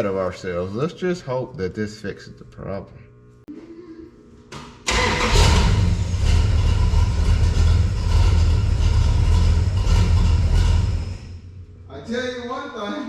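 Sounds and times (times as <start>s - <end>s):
truck engine starting and idling: 4.9s - 11.4s.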